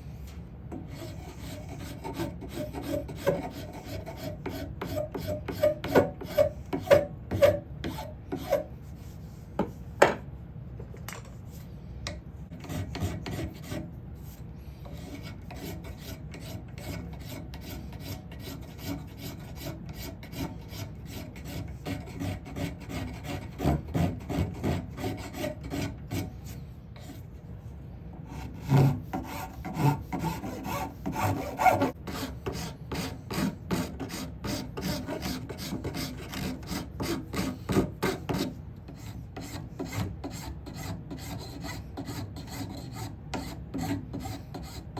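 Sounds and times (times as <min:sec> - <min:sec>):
hand tool rasping across wood: 0:00.9 - 0:08.7, 0:12.6 - 0:13.8, 0:14.9 - 0:27.2, 0:28.3 - 0:44.8.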